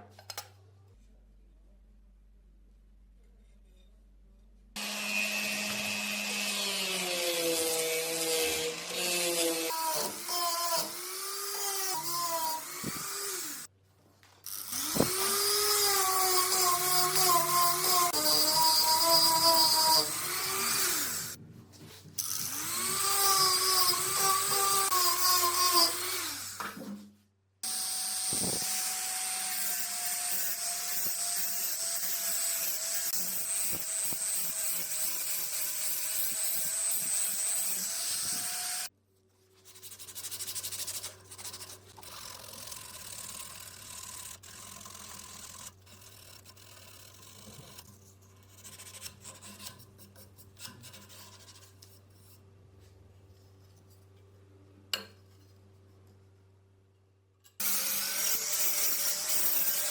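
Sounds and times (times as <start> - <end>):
power tool grinding: 4.8 - 13.7, 14.5 - 21.4, 22.2 - 26.8, 27.6 - 38.9, 57.6 - 59.9
hand rubbing and filing: 39.4 - 52.5.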